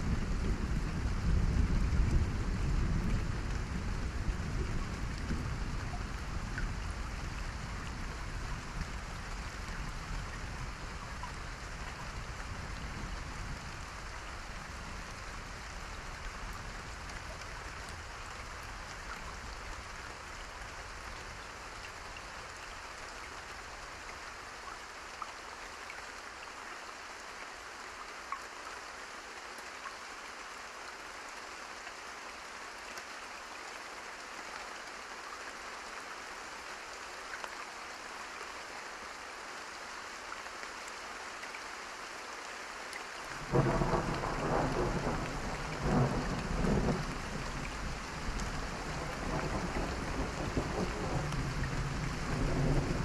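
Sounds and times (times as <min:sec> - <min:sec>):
low rumble of thunder: 0:00.0 - 0:18.6, 0:43.4 - 0:53.0
steady rain falling: 0:00.0 - 0:53.0.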